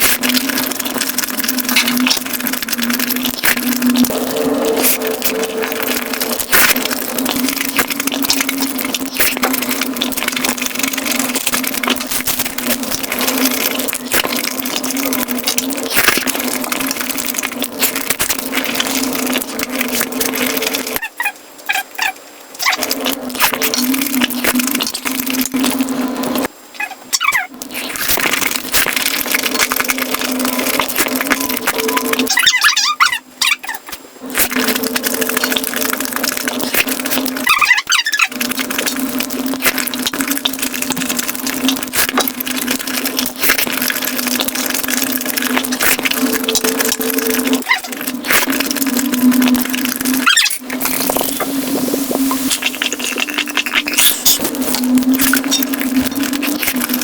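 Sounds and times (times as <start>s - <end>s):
steady hum: 0.0s - 26.8s, 38.2s - 57.0s
crunchy chewing: 0.0s - 57.0s.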